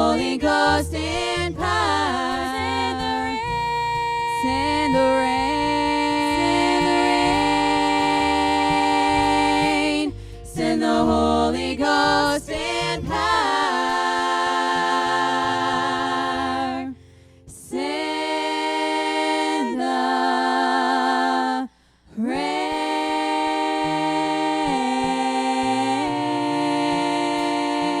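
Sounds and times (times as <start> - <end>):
low bass accompaniment: 0.0 - 17.7
gospel voices singing: 0.0 - 28.0.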